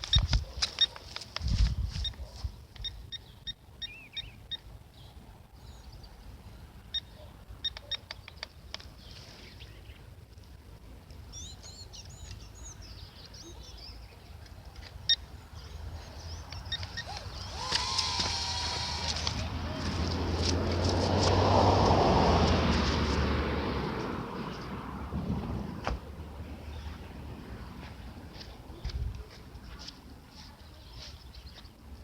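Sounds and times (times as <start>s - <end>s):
wind on microphone: 1.4s - 2.2s
birds chirping: 11.3s - 20.0s.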